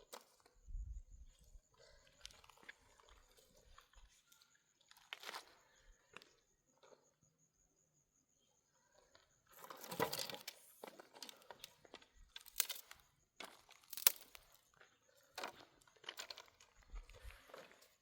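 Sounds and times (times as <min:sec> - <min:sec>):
sharp cracks and crinkling: 0:09.7 - 0:17.8.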